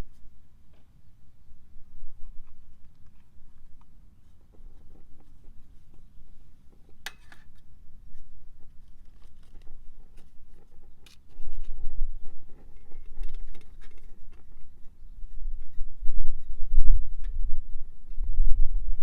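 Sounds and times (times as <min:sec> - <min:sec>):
small clicks and scraping: 0:02.3 - 0:15.8
wind on microphone: 0:09.6 - 0:19.0.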